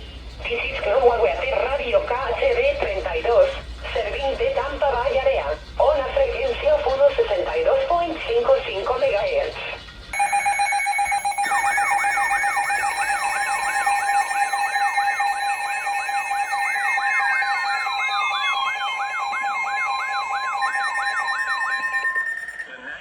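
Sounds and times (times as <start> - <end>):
steady electronic tones: 10.2 - 22.8
electronic warbling siren: 10.2 - 22.9.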